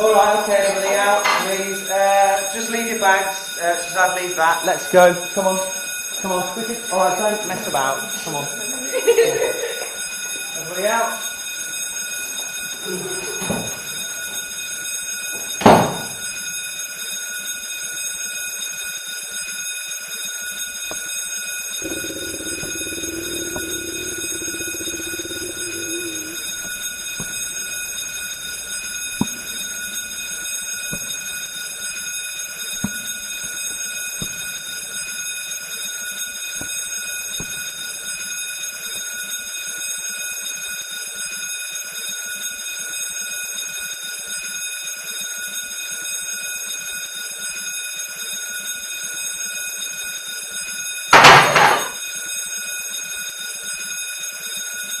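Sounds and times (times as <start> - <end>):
fire alarm tone: 0.0 - 16.8, 21.8 - 39.3, 49.5 - 52.0.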